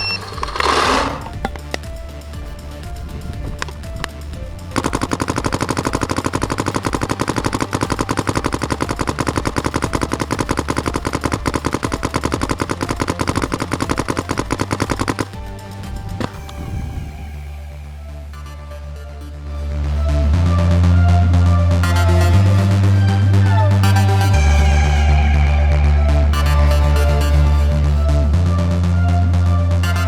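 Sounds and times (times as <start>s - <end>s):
background music: 0.0s - 30.0s
paintball marker rapid firing: 0.2s - 2.0s, 2.9s - 16.5s.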